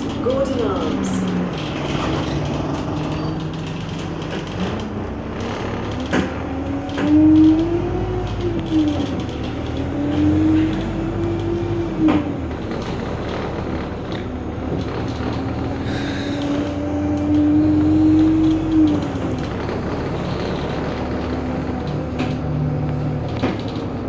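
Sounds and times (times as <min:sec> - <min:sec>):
bus engine accelerating: 0:00.0 - 0:24.0.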